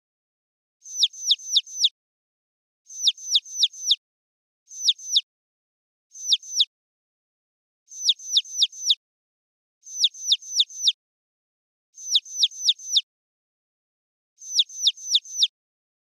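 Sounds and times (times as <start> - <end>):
high bird-like chirps: 0.8 - 2.0, 2.9 - 4.0, 4.7 - 5.3, 6.1 - 6.7, 7.9 - 9.0, 9.8 - 11.0, 12.0 - 13.1, 14.4 - 15.6.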